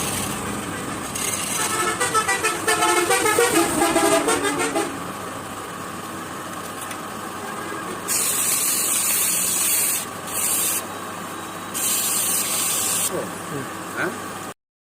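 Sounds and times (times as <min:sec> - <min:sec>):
wood lathe running: 0:00.0 - 0:02.1
hissing bursts of spray: 0:08.1 - 0:10.8, 0:11.7 - 0:13.1.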